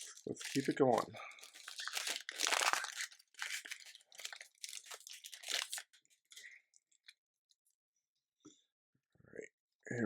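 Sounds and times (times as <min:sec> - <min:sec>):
plastic wrapper crinkling and tearing: 0:00.0 - 0:07.2.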